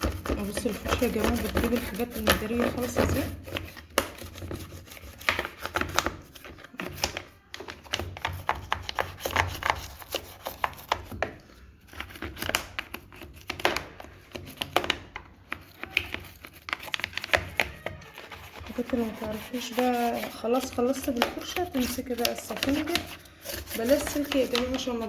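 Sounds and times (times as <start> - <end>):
brush scrubbing: 0.0 - 7.0, 15.5 - 25.0.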